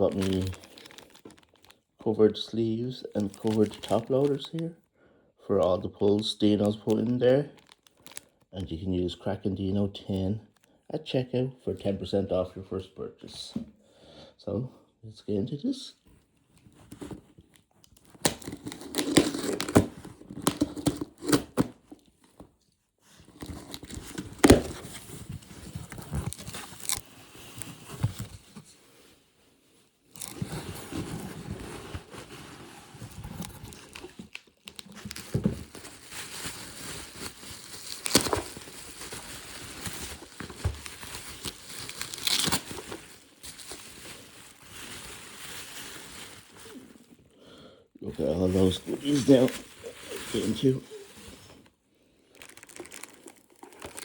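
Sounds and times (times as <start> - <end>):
packaging tearing and crinkling: 0.0 - 1.8, 3.0 - 4.6, 6.1 - 8.4, 16.8 - 22.1, 23.2 - 28.4, 30.1 - 47.2, 48.6 - 54.0.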